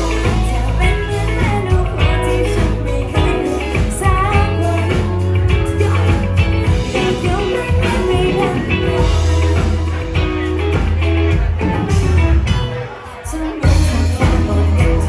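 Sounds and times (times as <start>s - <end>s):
woman singing: 0.0s - 10.3s, 13.2s - 15.0s
pop-rock band playing: 0.0s - 15.0s.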